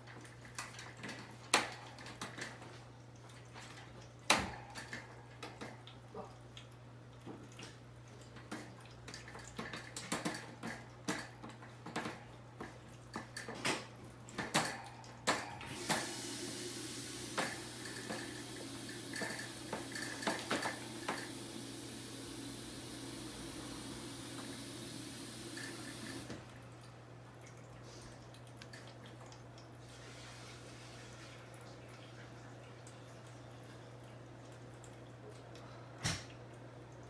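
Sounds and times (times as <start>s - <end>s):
tap running: 15.3s - 26.6s.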